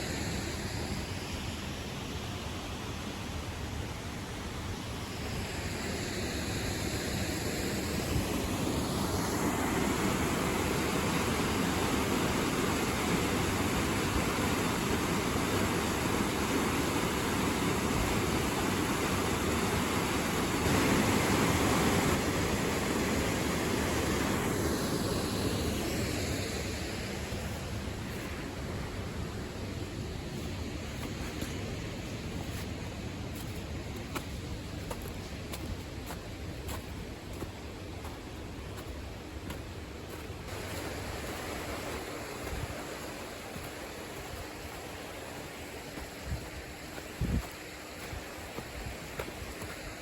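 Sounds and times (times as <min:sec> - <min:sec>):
waterfall rushing: 0:38.1 - 0:50.0.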